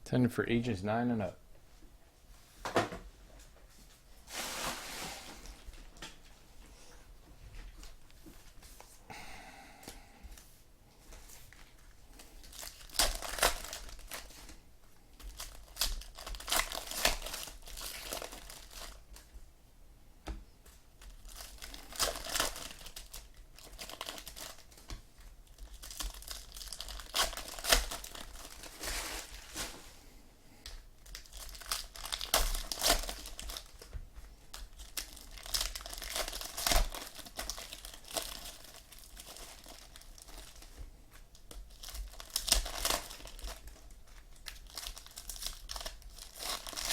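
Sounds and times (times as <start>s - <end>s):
plastic wrappers crinkling and tearing: 11.4s - 19.3s, 20.6s - 30.0s, 30.6s - 46.9s.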